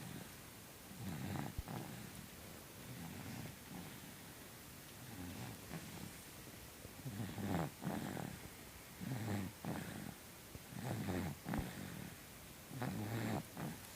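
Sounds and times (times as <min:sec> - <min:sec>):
person snoring: 0:07.0 - 0:08.4, 0:09.0 - 0:13.8.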